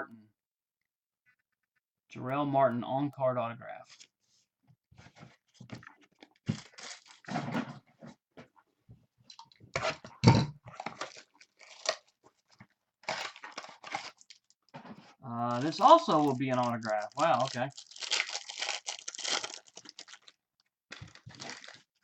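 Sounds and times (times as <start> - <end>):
wrapper torn open and crinkled: 6.6 - 7.3, 10.8 - 12.1, 13.0 - 14.6, 15.5 - 22.0.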